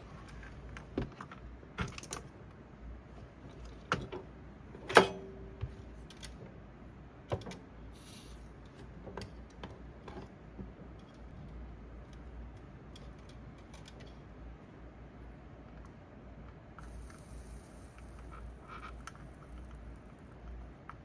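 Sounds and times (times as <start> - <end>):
short hiss: 7.9 - 8.6.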